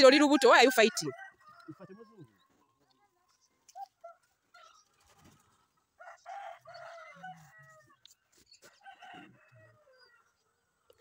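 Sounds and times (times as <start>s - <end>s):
rooster crowing: 0.1s - 2.2s, 6.0s - 8.0s, 8.8s - 10.1s.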